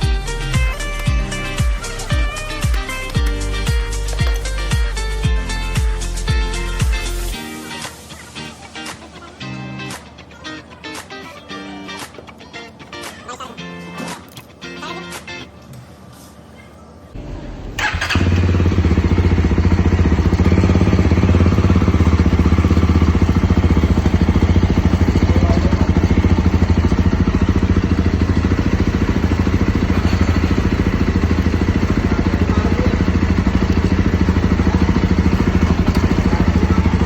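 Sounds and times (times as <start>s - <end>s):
motorcycle engine running: 0.0s - 7.4s, 17.2s - 37.0s.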